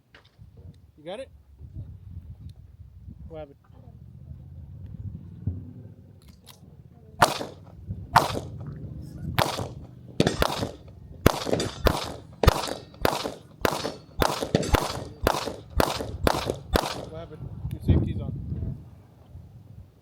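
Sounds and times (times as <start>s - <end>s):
gunshots: 7.2s - 8.6s, 9.4s - 17.3s.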